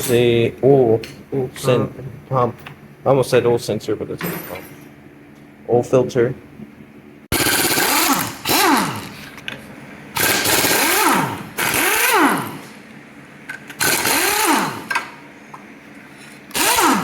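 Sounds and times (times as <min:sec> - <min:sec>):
power tool bursts: 0:07.3 - 0:09.2, 0:10.2 - 0:12.7, 0:13.8 - 0:15.1, 0:16.5 - 0:17.0.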